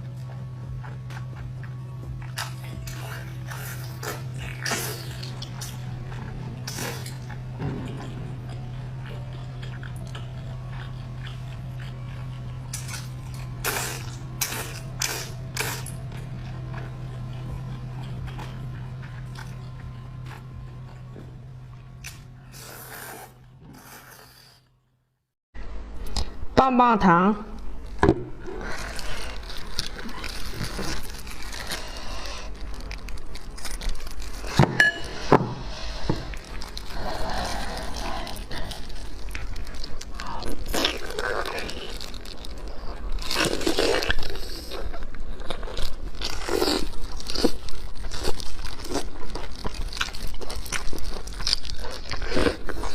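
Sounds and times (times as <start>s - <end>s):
crunching while eating: 0.0s - 24.6s, 27.6s - 52.9s
steady low hum: 0.0s - 52.9s
food wrapper crinkling: 28.6s - 34.6s, 36.3s - 52.9s.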